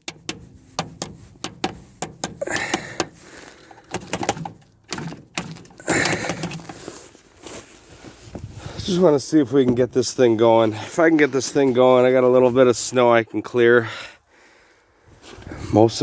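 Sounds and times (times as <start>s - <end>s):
metal parts clicking: 0.0s - 6.9s
rustling: 3.2s - 9.2s.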